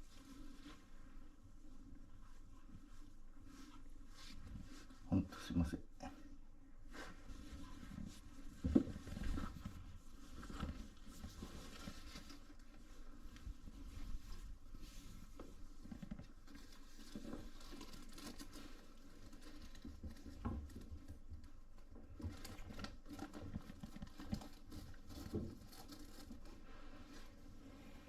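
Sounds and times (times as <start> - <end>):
rustles: 6.8 - 28.0.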